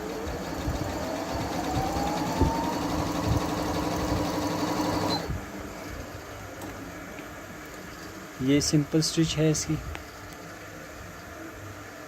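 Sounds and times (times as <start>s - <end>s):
sewing machine motor whine: 0.0s - 5.4s.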